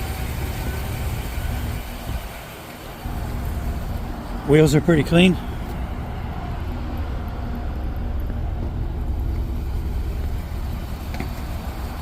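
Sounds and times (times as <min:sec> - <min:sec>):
pickup truck engine idling: 0:00.0 - 0:12.0.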